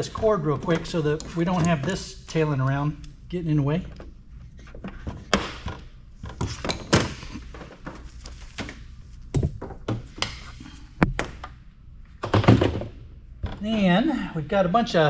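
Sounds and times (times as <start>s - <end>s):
knocks and clunks of handling: 3.8s - 13.8s.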